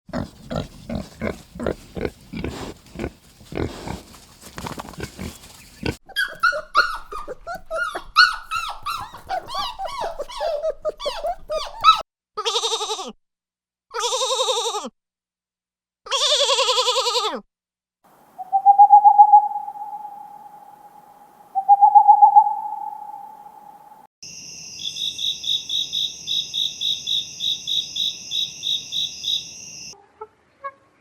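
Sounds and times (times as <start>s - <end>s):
rough grunting: 0.1s - 6.0s
long bleats: 12.4s - 13.2s, 14.0s - 14.9s.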